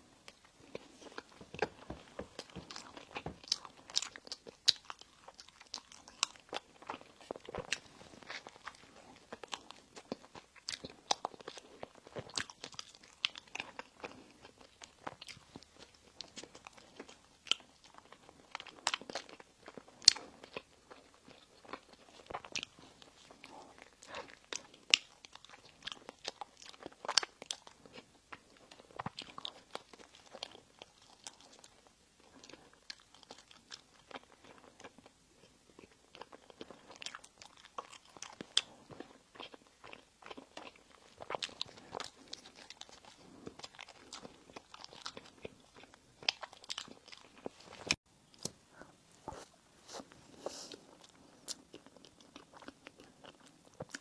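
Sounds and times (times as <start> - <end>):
soft chewing: 0.0 - 54.0.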